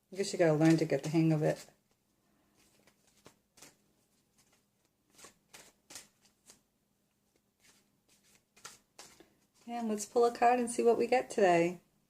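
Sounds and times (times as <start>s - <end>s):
cards being shuffled: 0.2s - 6.7s, 7.3s - 10.2s.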